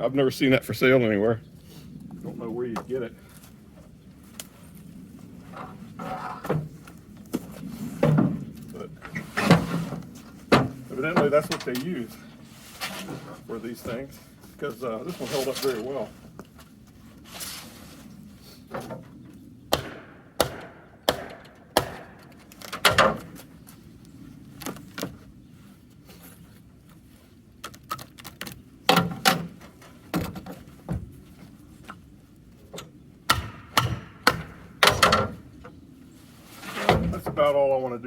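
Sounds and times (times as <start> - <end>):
wood and board breaking by hand: 19.7 - 23.4, 27.6 - 31.0, 33.3 - 35.4.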